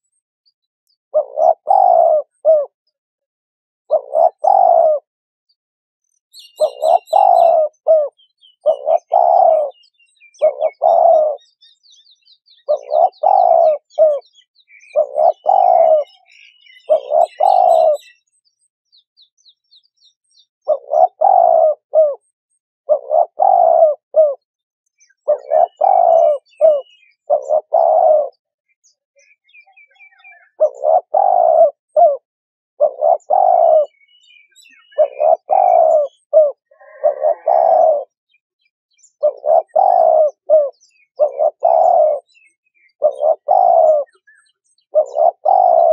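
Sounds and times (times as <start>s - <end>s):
small birds twittering: 0.0s - 3.0s, 3.9s - 5.1s, 6.0s - 45.9s
dove cooing: 1.1s - 2.8s, 3.9s - 5.1s, 6.4s - 11.6s, 12.5s - 18.2s, 20.6s - 22.3s, 22.9s - 24.4s, 25.0s - 28.5s, 29.6s - 38.2s, 39.1s - 45.9s.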